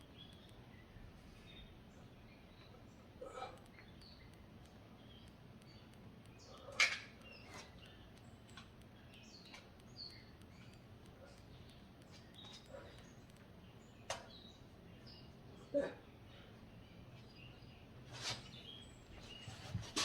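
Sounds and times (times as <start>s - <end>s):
sharp clicks: 0.0s - 0.7s, 3.4s - 14.5s
faint high chirps: 0.0s - 17.9s.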